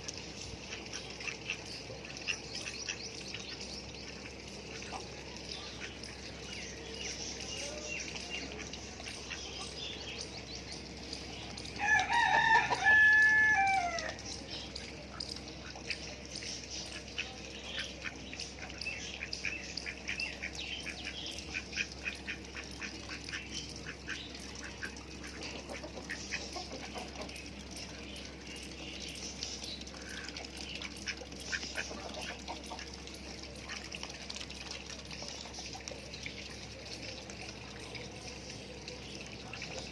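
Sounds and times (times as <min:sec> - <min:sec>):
rooster crowing: 0:11.8 - 0:14.2
poultry clucking: 0:19.2 - 0:27.6.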